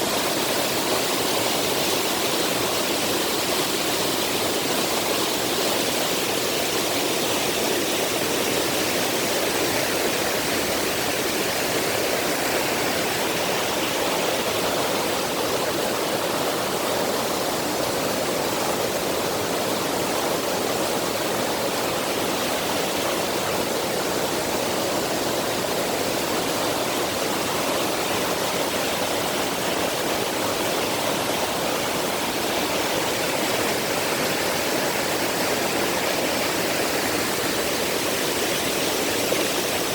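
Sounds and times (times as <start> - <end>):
stream rushing: 0.0 - 39.9.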